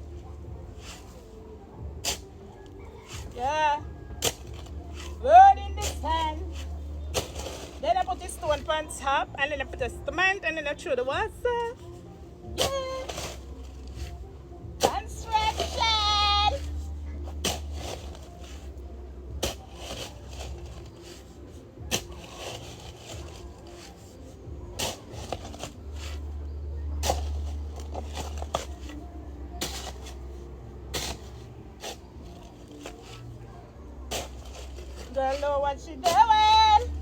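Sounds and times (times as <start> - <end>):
stones knocking and scraping: 5.9 - 8.7, 16.7 - 26.3, 27.0 - 33.4, 34.0 - 37.0.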